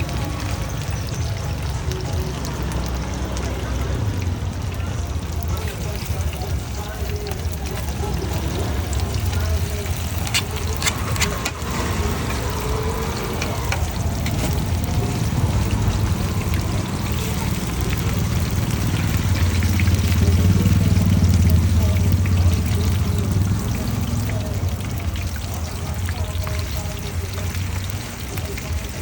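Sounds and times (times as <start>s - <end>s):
batter sizzling in hot oil: 0.0s - 29.0s
low rumble: 8.0s - 25.6s.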